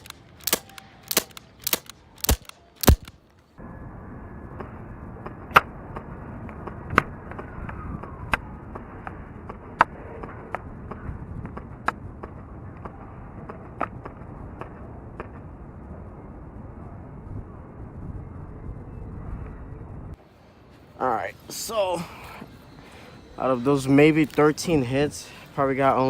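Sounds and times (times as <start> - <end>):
airsoft pistol shots: 0.0 - 3.2
steady background hum: 0.0 - 26.0.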